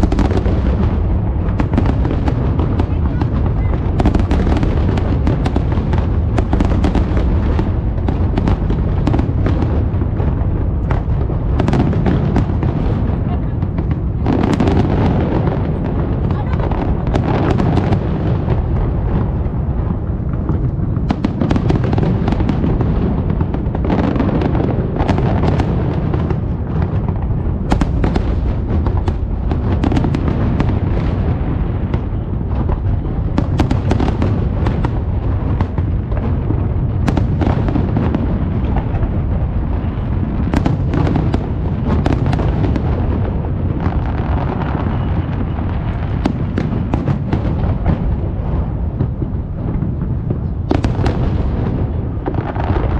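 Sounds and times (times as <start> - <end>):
fireworks booms: 0.0 - 52.9
fireworks cracks and pops: 0.0 - 52.9.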